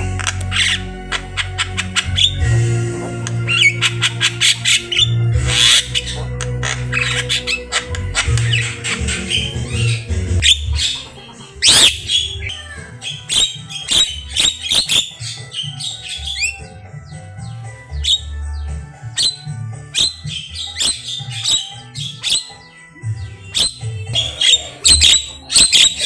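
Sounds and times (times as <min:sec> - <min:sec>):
low pulsing sound: 0:00.0 - 0:11.0
bird singing chirps and squawks: 0:00.0 - 0:26.0.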